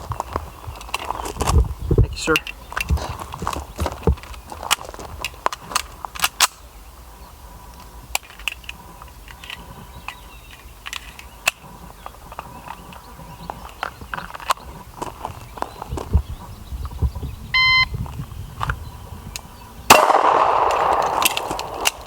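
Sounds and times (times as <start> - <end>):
gunfire cracks: 19.9 - 22.0.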